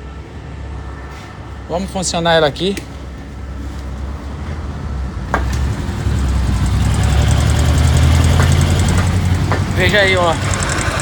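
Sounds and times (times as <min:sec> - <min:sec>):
motorcycle engine running: 0:05.6 - 0:11.0
cam chain rattling: 0:09.8 - 0:11.0.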